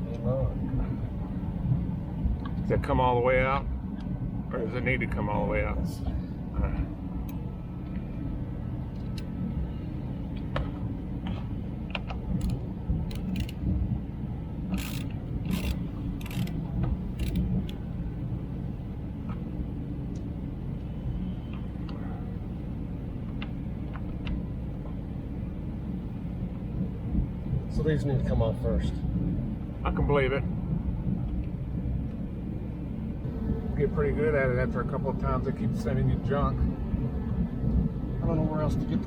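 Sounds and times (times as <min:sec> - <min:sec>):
steady low rumble: 0:00.0 - 0:39.0
hand tools clicking on metal: 0:12.4 - 0:13.6, 0:14.8 - 0:16.6, 0:17.2 - 0:17.8.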